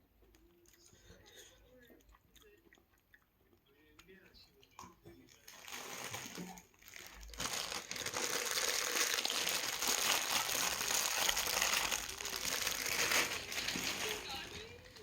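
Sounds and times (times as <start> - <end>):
material crinkling and rustling: 5.4 - 15.0.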